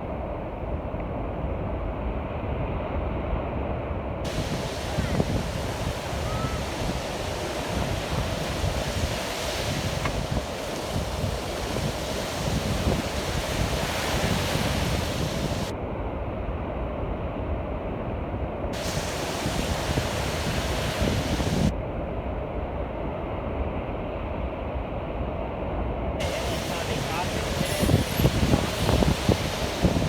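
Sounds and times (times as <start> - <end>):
wind rumbling on microphone: 0.0 - 15.8, 17.2 - 23.5, 26.2 - 30.0
surf breaking on beach: 4.2 - 15.7, 18.8 - 21.7, 26.2 - 30.0.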